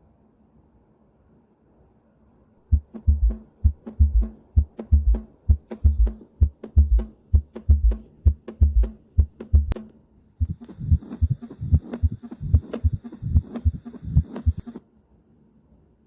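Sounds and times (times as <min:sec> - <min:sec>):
heartbeat thumps: 0:02.7 - 0:09.8, 0:10.4 - 0:14.8
steady hiss: 0:05.5 - 0:14.8.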